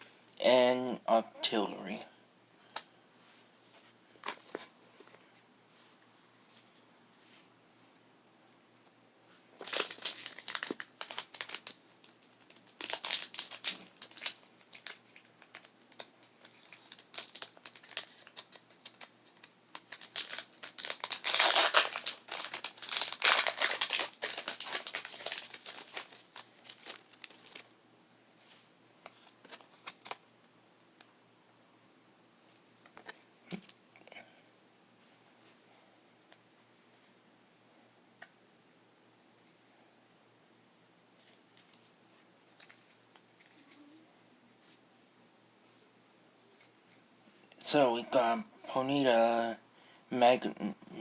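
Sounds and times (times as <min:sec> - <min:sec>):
foil wrapper crinkling and tearing: 0:09.6 - 0:27.7.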